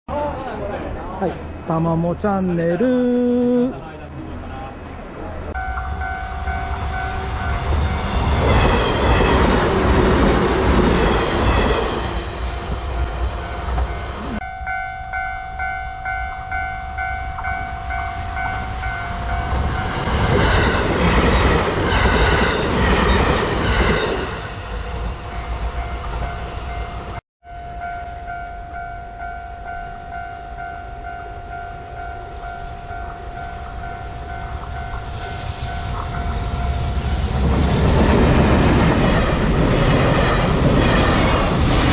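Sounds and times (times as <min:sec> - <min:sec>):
level-crossing warning bell ringing: 0:04.5 - 0:09.5, 0:12.3 - 0:23.3, 0:23.9 - 0:37.5.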